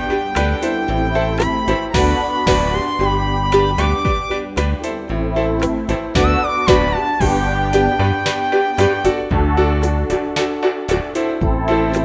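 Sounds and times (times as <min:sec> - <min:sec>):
upbeat instrumental music: 0:00.0 - 0:12.0.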